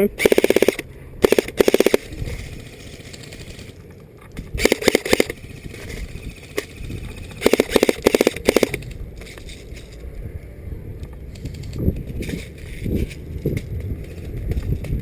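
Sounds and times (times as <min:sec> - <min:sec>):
airsoft guns firing bursts: 0:00.2 - 0:03.7, 0:04.6 - 0:08.8.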